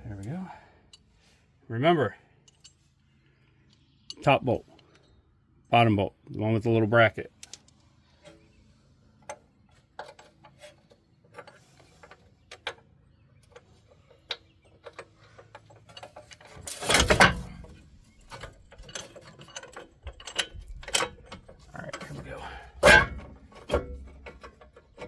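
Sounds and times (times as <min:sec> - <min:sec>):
bolts and tools clinking: 0:02.4 - 0:05.2, 0:07.3 - 0:25.0.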